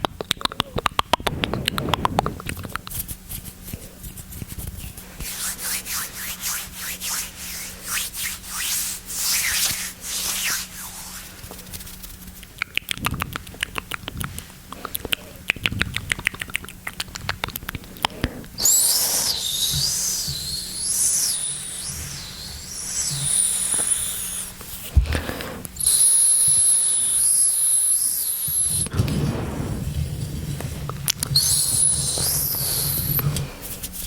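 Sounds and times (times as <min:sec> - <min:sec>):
wet mouth clicks: 0:00.0 - 0:02.9, 0:12.1 - 0:18.7
high-pitched squeaky mouth sounds: 0:18.6 - 0:24.6, 0:31.4 - 0:33.2.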